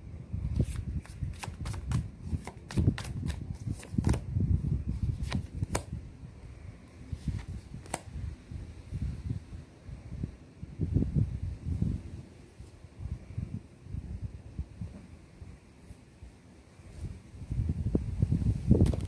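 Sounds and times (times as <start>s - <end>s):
wind rumbling on microphone: 0.0s - 19.0s
cards being shuffled: 0.5s - 4.2s, 5.0s - 5.9s, 7.2s - 8.1s.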